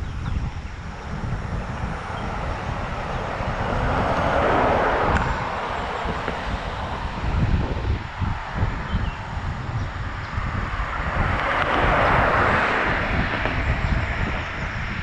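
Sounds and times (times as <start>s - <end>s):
motor vehicle passing: 0.0s - 15.0s
wind buffeting microphone: 0.0s - 15.0s.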